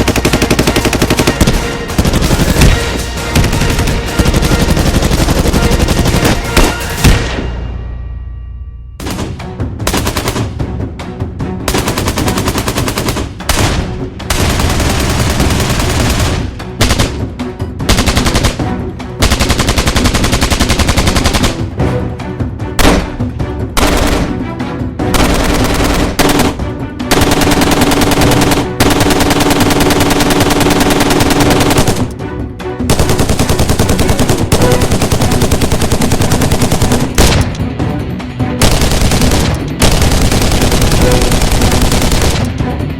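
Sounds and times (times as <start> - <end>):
rifle firing automatic bursts: 0.0 - 6.8, 11.7 - 13.6, 14.3 - 17.2, 17.9 - 18.6, 19.2 - 21.6, 25.2 - 32.1, 32.9 - 37.5, 38.6 - 42.5.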